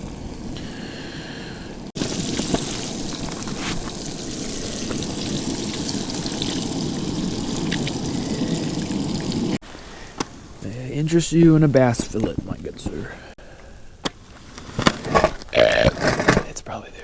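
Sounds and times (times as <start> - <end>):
fish sizzling in hot oil: 1.9 - 9.6.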